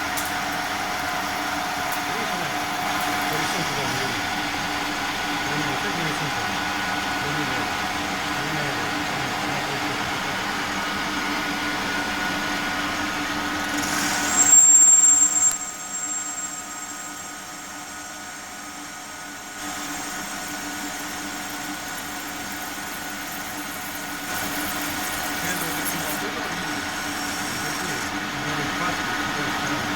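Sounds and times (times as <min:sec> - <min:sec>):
lathe machine hum: 0:00.0 - 0:14.6, 0:15.8 - 0:29.9
high-pitched whine: 0:13.8 - 0:18.3.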